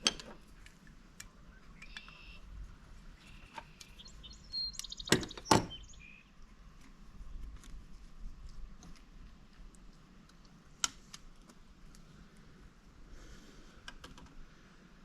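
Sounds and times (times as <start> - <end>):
sharp clicks: 0.0 - 2.2
birds chirping faintly: 0.1 - 7.4.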